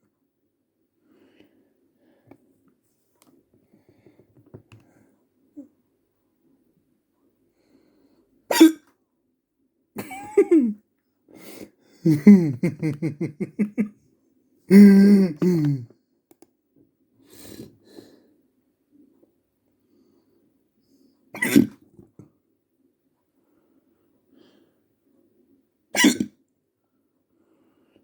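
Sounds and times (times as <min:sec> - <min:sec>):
person hiccuping: 0:08.5 - 0:08.8, 0:14.7 - 0:15.9, 0:21.4 - 0:21.8, 0:26.0 - 0:26.3.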